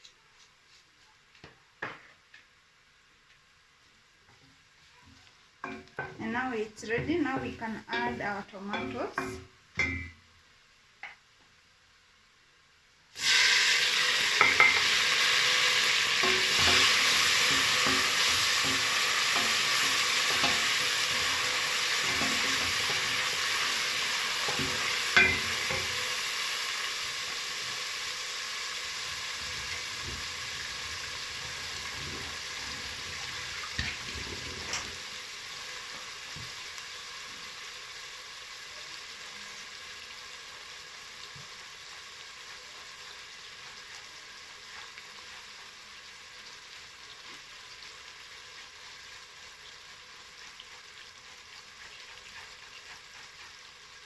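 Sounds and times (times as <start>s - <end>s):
tomatoes sizzling in oil: 0.0s - 54.0s
utensil knocking on pan: 6.9s - 10.2s, 14.4s - 14.9s, 24.5s - 26.0s.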